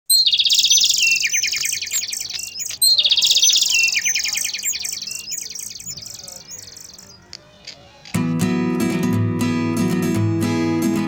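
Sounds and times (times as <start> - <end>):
songbird singing: 0.1 - 8.2.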